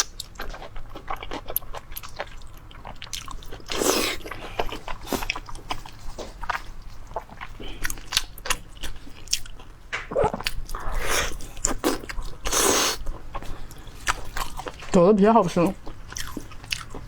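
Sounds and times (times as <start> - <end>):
biting and chewing: 0.0 - 15.0, 15.6 - 17.0
smacking and sucking: 10.0 - 14.7.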